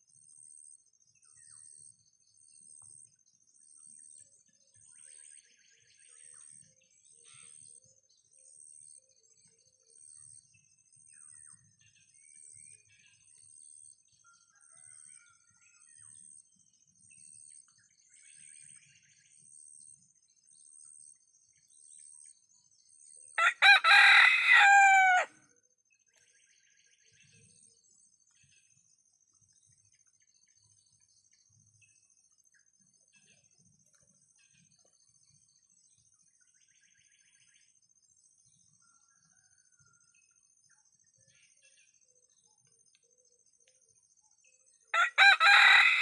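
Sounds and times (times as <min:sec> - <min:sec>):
rooster crowing: 0:23.4 - 0:25.4, 0:45.0 - 0:46.0.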